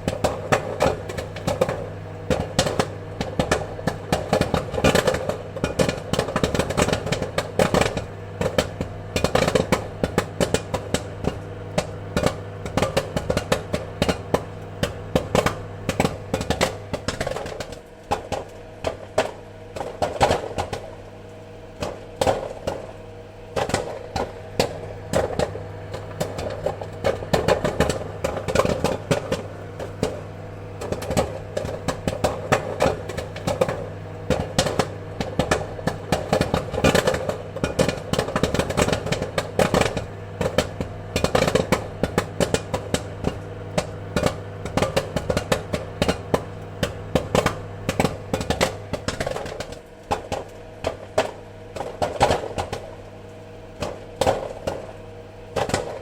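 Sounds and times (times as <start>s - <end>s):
popcorn popping: 0.0s - 56.0s
steady low hum: 0.0s - 56.0s.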